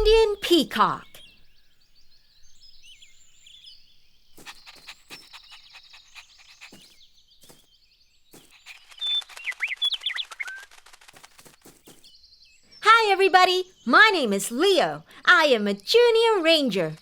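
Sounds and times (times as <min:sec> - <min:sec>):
birds chirping and trilling: 0:00.0 - 0:17.0
quick gliding bird calls: 0:04.4 - 0:07.7, 0:08.4 - 0:12.1.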